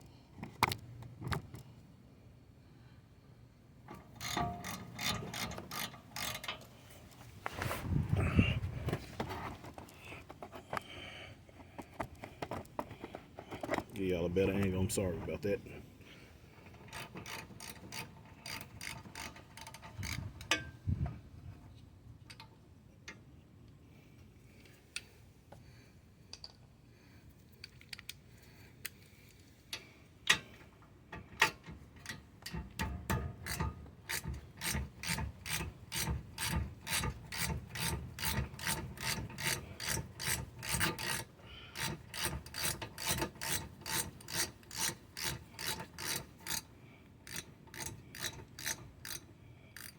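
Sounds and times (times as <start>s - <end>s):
hand ratchet clicking: 3.9s - 6.7s, 16.7s - 20.6s, 31.4s - 49.9s.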